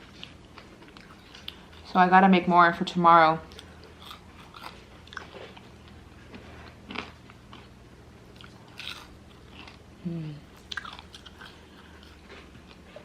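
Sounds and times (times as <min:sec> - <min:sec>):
person chewing food: 0:00.0 - 0:01.9, 0:03.5 - 0:13.0
crunchy bites: 0:08.4 - 0:09.8, 0:10.6 - 0:12.2.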